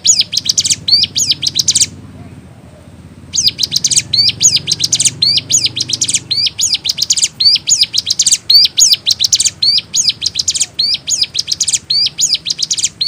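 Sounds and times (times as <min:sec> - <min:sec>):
bird singing sharp high chirps: 0:00.0 - 0:02.0, 0:03.3 - 0:13.0.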